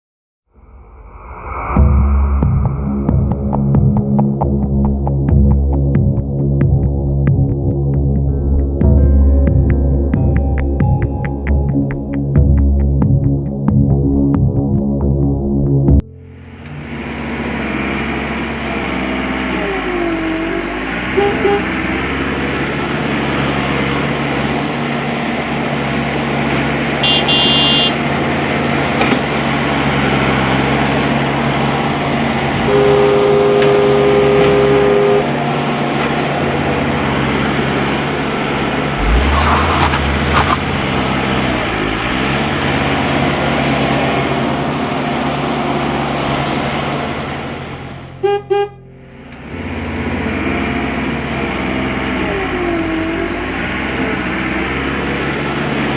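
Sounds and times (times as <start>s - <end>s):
vehicle engine running: 16.0s - 55.9s
two-tone horn: 21.1s - 22.0s, 27.0s - 28.0s, 32.6s - 35.7s, 48.2s - 48.9s.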